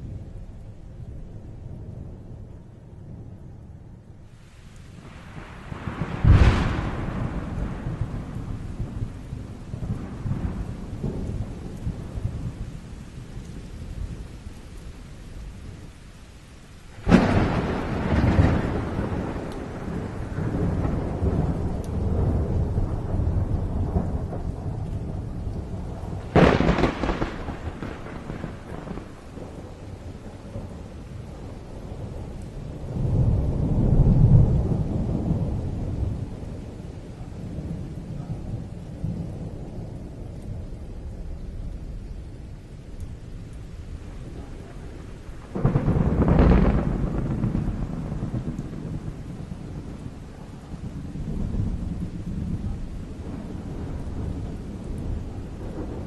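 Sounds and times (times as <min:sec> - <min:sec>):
rolling thunder: 0:00.0 - 0:15.9, 0:16.8 - 0:56.0
rain: 0:00.0 - 0:56.0
loud thunderclap: 0:05.0 - 0:12.6, 0:17.0 - 0:36.6, 0:43.4 - 0:56.0.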